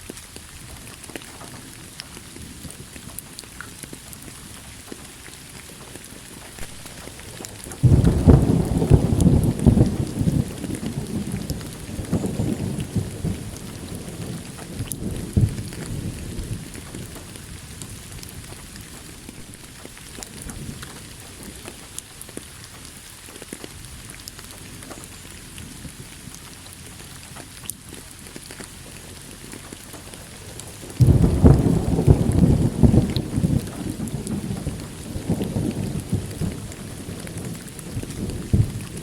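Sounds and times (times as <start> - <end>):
rain falling: 0.0 - 39.0
small crackles: 0.0 - 39.0
low thunder rumble: 6.4 - 22.3, 28.8 - 39.0.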